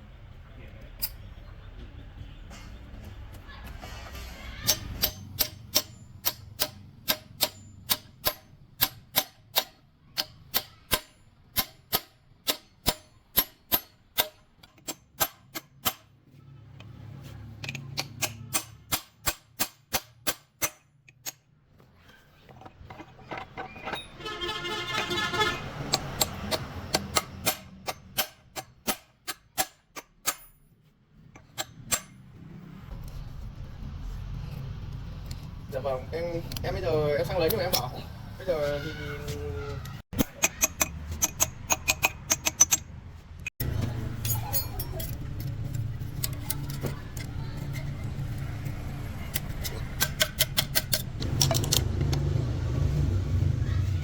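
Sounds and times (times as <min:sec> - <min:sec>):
hammer striking metal: 0:04.1 - 0:16.1, 0:17.9 - 0:21.4, 0:24.0 - 0:30.6, 0:31.4 - 0:32.3, 0:40.2 - 0:45.2.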